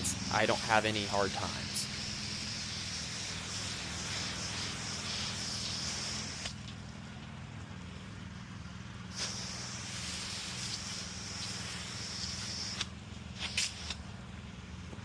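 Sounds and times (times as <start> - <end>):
low machine hum: 0.0 - 5.1
hose nozzle spray hissing: 0.0 - 6.6, 9.1 - 14.0.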